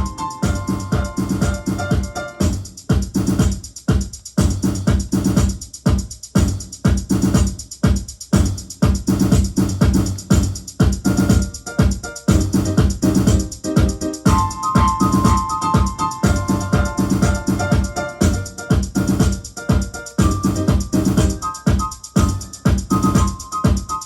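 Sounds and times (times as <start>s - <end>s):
electronic drum beat: 0.0s - 24.0s.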